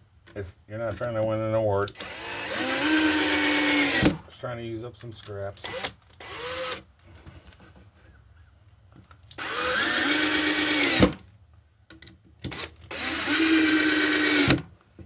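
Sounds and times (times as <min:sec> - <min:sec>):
power drill driving screws into wood: 0:01.9 - 0:04.3, 0:05.6 - 0:06.9, 0:09.3 - 0:11.3, 0:12.4 - 0:14.7.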